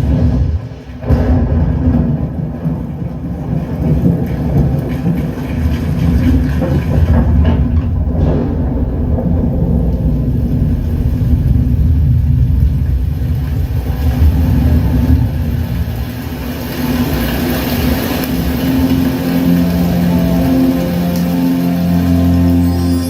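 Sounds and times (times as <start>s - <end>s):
deep heavy rumble: 0.0s - 23.0s
held musical notes: 16.0s - 23.0s.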